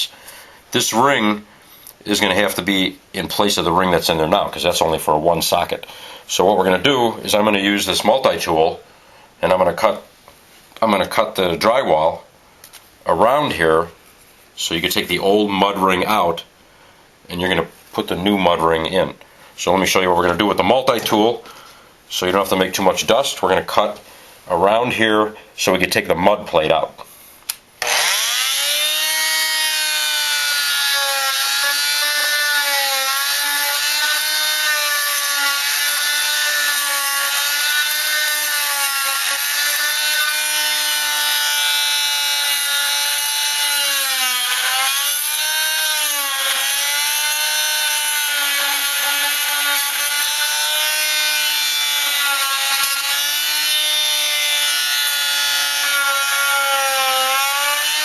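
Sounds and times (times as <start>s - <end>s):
oscillating tool cutting drywall: 27.8s - 58.0s.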